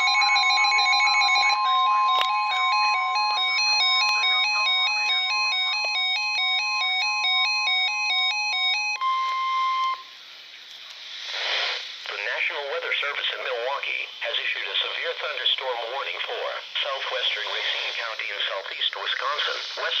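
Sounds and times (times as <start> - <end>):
beeping electronic melody: 0.0 - 10.1
steady alarm tone: 0.0 - 10.1.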